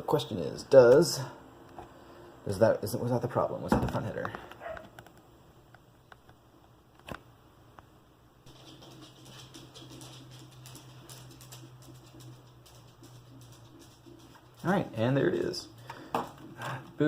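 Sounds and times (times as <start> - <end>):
computer fan humming: 0.0 - 17.0.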